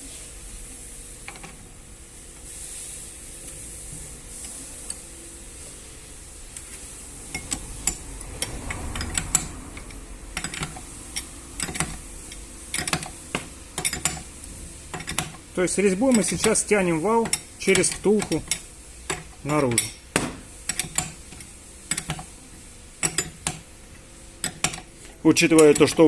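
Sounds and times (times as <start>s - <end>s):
wrench clicking on metal: 7.3s - 14.3s, 14.9s - 15.4s, 16.0s - 20.0s, 20.7s - 22.4s, 23.0s - 23.7s, 24.4s - 26.0s.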